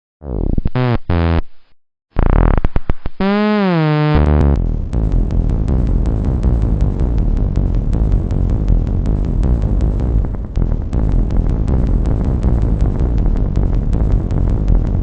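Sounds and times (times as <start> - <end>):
electronic remix music: 3.2 - 15.0.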